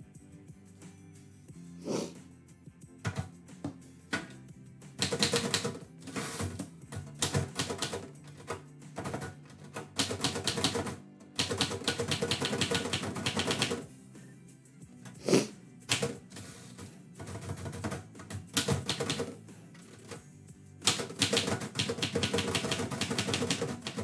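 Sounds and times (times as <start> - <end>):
typewriter keystrokes: 5.0 - 13.8, 15.9 - 20.2, 20.8 - 24.0.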